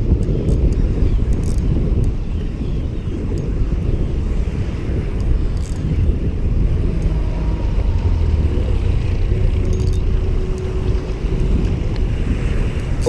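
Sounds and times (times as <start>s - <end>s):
low rumble: 4.0s - 13.0s.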